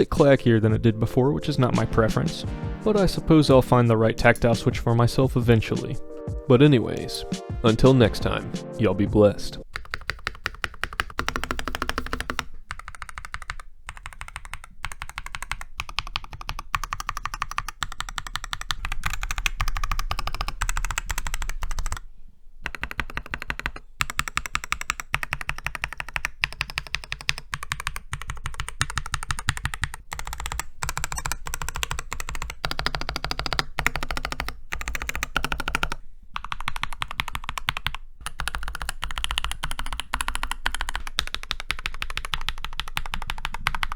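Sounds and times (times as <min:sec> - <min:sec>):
fast typing on mechanical keyboard: 0:09.6 - 0:22.0, 0:22.6 - 0:43.9.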